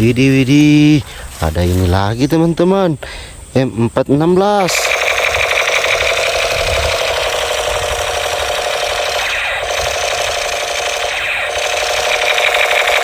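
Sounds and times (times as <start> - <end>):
fast buzzing rattle: 4.5 - 13.0.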